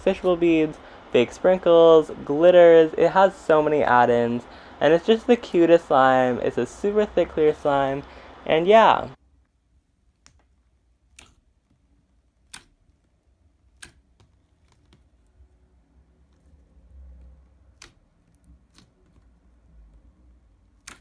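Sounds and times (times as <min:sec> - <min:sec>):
faint low rumble: 0:00.0 - 0:09.2.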